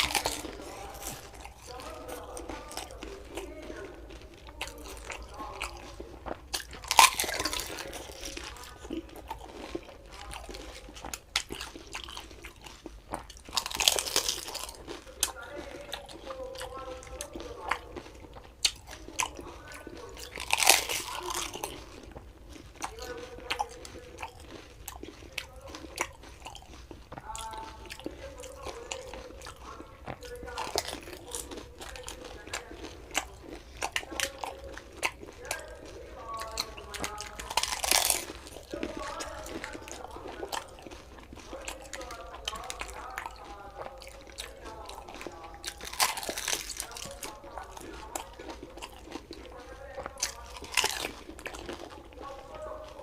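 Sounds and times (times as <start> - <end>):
crisp shells crunching: 0.0 - 53.0
wet chewing: 0.0 - 53.0.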